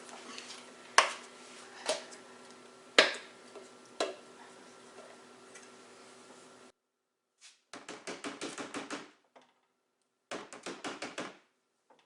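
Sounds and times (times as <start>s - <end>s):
faint steady hum: 0.0s - 6.8s.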